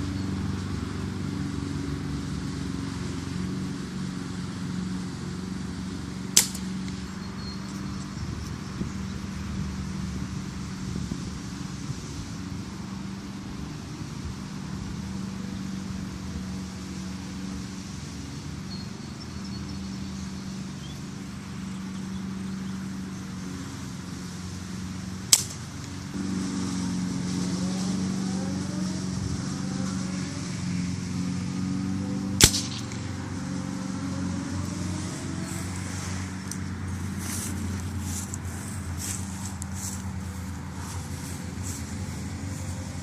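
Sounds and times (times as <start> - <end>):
steady low hum: 0.0 - 43.0
gunshots: 32.4 - 33.0.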